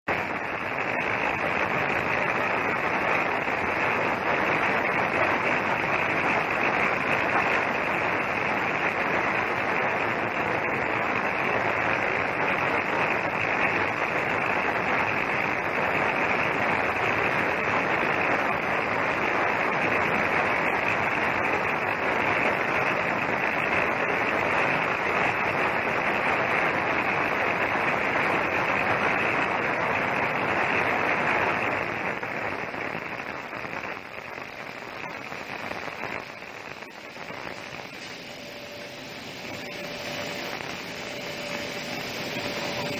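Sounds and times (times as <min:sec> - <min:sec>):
washing machine rushing noise: 0:36.2 - 0:42.9.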